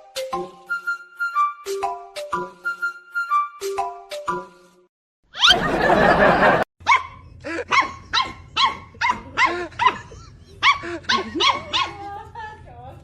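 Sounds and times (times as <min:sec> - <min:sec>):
dog barking: 0:06.8 - 0:12.1.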